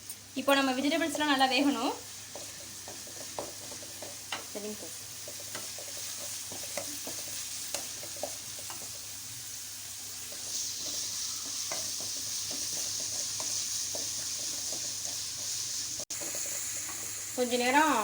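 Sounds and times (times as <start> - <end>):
vegetables sizzling in oil: 0.0 - 18.0
spoon scraping against pan: 2.1 - 9.0, 10.2 - 17.1.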